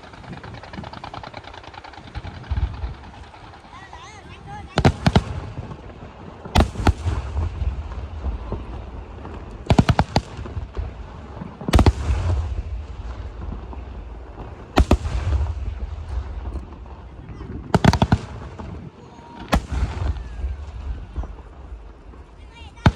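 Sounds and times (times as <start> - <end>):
low rumble and crackle: 0.0 - 22.9
firework shells bursting: 4.8 - 22.9.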